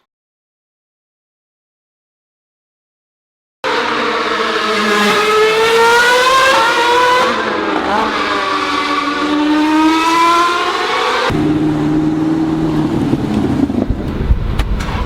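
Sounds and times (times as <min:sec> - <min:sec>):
car engine accelerating hard: 0:03.7 - 0:14.2.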